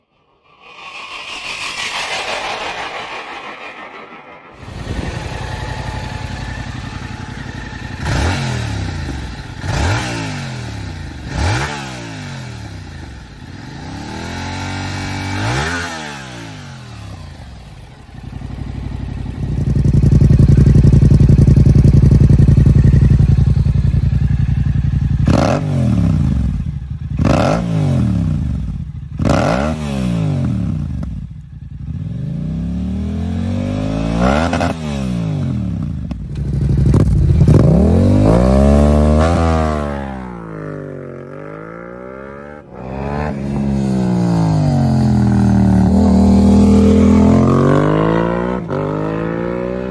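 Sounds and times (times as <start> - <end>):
motorcycle engine revving: 3.4 - 49.9.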